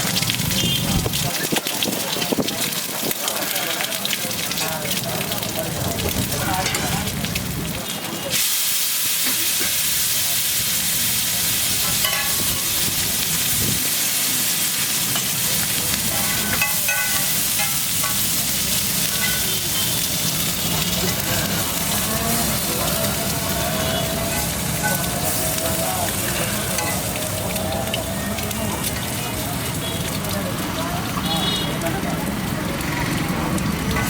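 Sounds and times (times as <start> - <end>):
food sizzling on a griddle: 0.0 - 34.0.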